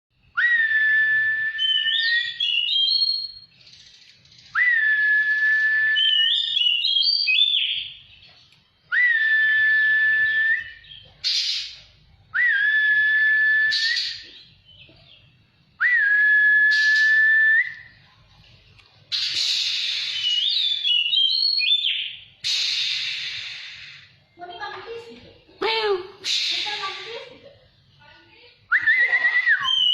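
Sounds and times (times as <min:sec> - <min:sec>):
bird whistling song: 0:00.2 - 0:18.0, 0:19.1 - 0:24.8, 0:28.7 - 0:29.9
harsh rasping bird calls: 0:11.1 - 0:11.9.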